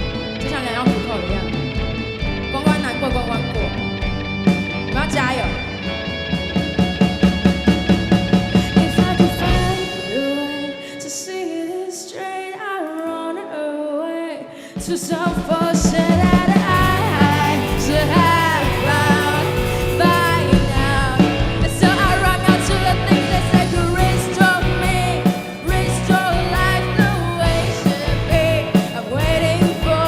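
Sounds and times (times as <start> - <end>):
rock band playing live: 0.0 - 11.8, 14.6 - 30.0
person singing: 8.5 - 30.0.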